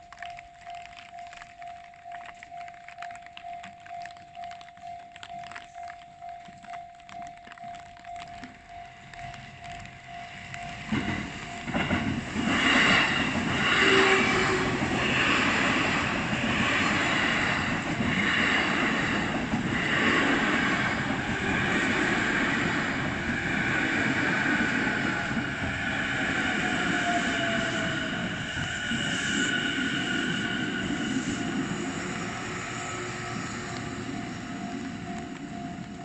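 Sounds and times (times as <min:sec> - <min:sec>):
level crossing warning bell: 0:00.0 - 0:36.0
train wheels clattering over rails: 0:08.2 - 0:36.0.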